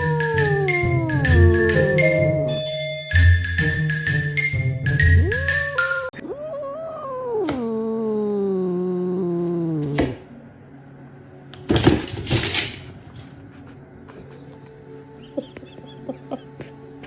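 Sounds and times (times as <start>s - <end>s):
cat yowling: 5.3s - 8.3s.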